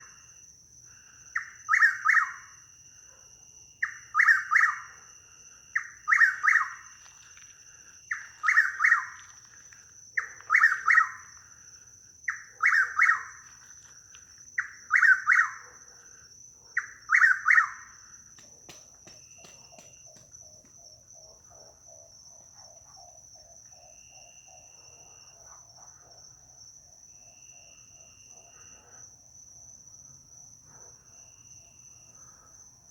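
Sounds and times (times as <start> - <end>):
high insect trill: 0.0 - 32.9
bird singing repeated call: 5.8 - 6.8.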